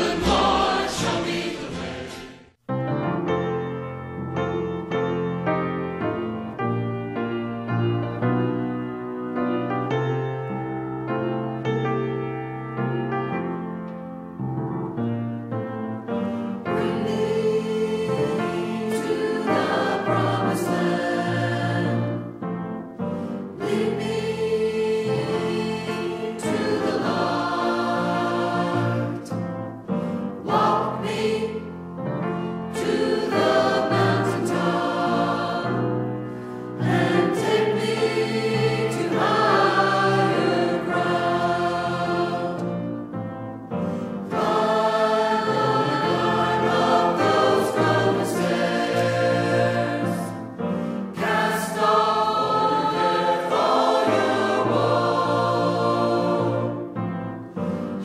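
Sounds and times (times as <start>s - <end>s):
choir singing a gospel hymn: 0.0s - 2.6s, 16.0s - 58.0s.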